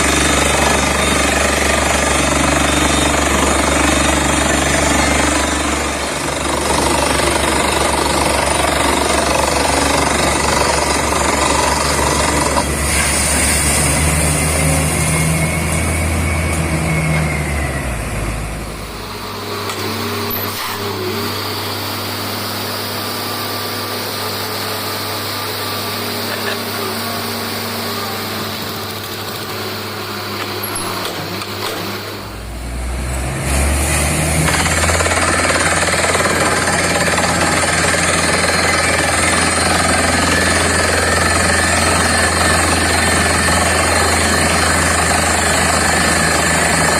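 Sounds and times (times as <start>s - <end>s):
air hammer pounding: 0.0s - 13.0s
rig engine and compressor running: 0.0s - 46.9s.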